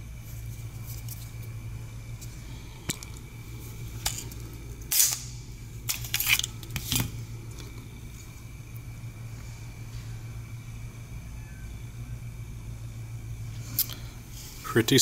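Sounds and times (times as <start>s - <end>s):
low hum: 0.0s - 15.0s
pistol slide metallic clicks: 4.9s - 5.4s.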